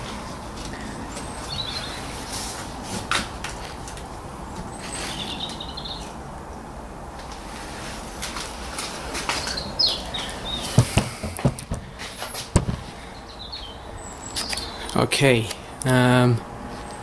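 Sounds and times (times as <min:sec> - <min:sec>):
bird chirping: 0:00.9 - 0:02.2, 0:04.7 - 0:06.2, 0:09.4 - 0:11.2, 0:12.7 - 0:15.9.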